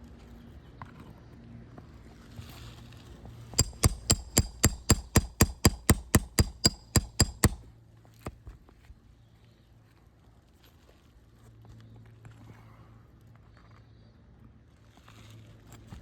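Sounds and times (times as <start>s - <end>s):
hammer striking metal tool: 3.6s - 7.6s.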